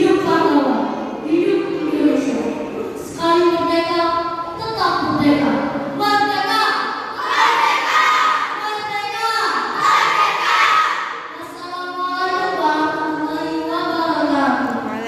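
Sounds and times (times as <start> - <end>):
children's choir singing: 7.1 - 8.6, 9.7 - 11.2.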